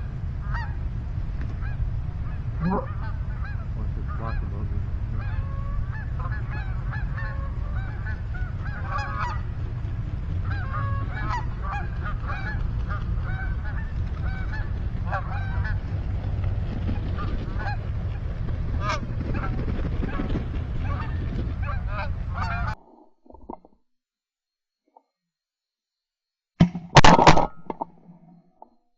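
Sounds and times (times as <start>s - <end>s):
geese honking: 0.0s - 22.8s
steady low rumble: 0.0s - 22.8s.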